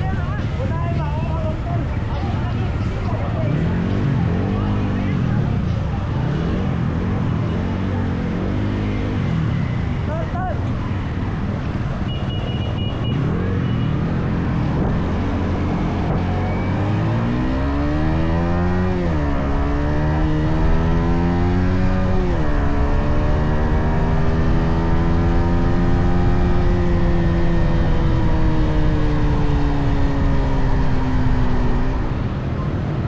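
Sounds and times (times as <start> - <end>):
motorcycle engine revving: 12.9 - 32.4.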